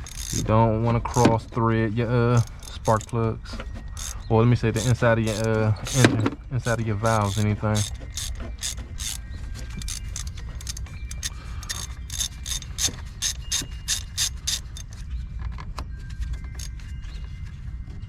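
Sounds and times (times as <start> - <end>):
socket ratchet clicking: 0.0 - 1.4, 2.3 - 3.3, 4.0 - 9.2, 9.8 - 14.9.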